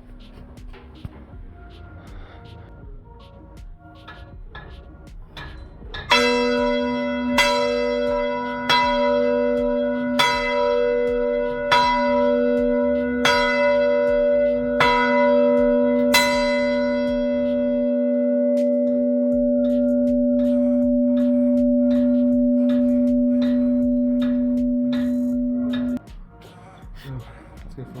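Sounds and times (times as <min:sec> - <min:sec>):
church bell ringing: 0:06.1 - 0:26.0.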